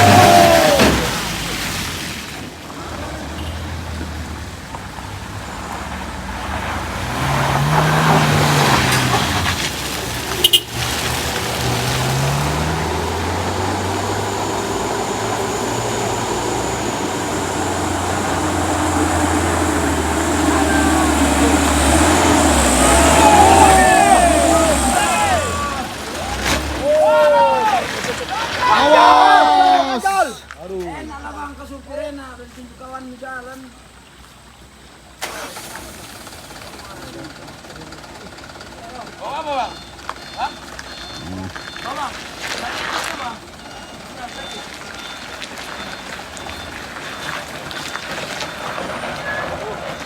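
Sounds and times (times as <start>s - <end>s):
vehicle engine revving: 0.0s - 1.9s, 2.7s - 28.7s.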